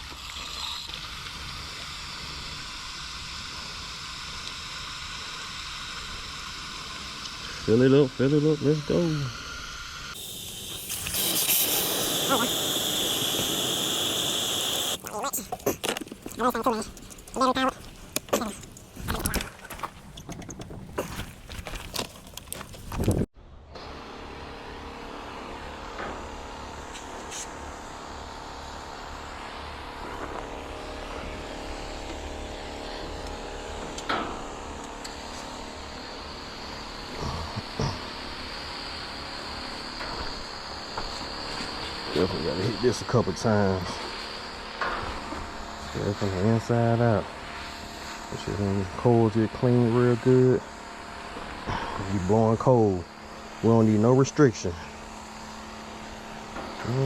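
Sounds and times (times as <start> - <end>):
liquid spray hissing: 0.0 - 16.0
motor humming: 0.0 - 57.0
thin high steady tone: 2.3 - 15.2.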